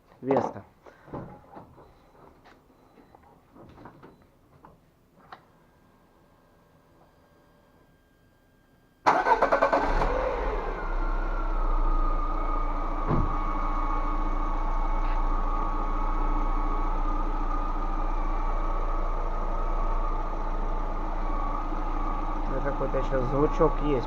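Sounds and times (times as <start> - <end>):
car engine starting and idling: 9.0 - 24.0
steady high tone: 10.7 - 24.0.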